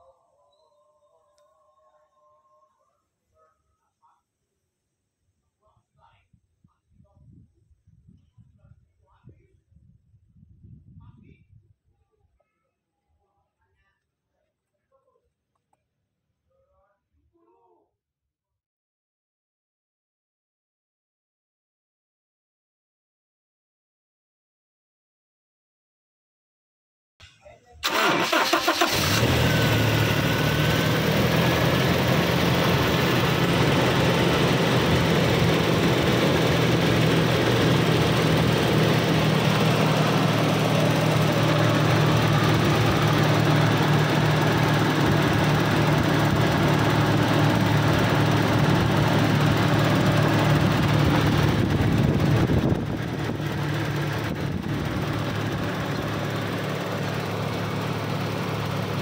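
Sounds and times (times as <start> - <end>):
car engine running roughly: 27.8 - 59.0.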